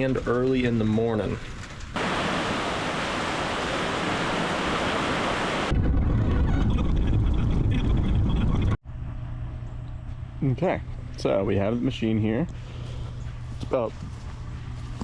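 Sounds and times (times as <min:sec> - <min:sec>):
heavy rain hissing: 0:02.0 - 0:05.7
wind on microphone: 0:02.0 - 0:08.8.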